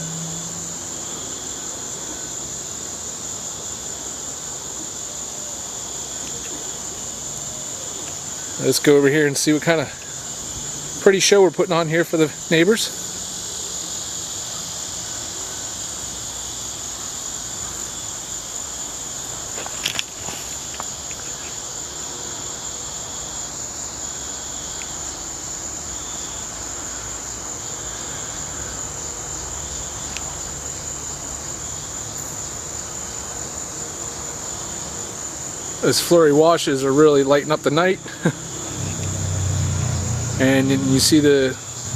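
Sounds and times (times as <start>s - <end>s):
crickets chirping: 0.0s - 41.9s.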